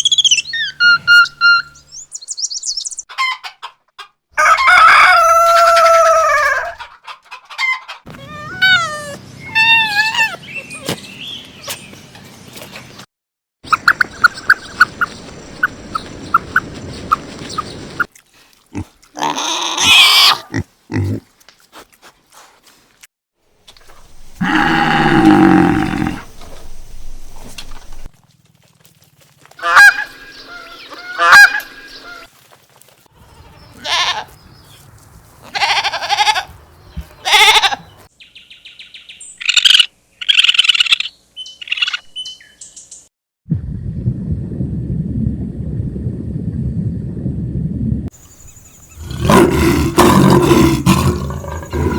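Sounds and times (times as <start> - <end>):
animal calls: 8.1 - 11.0.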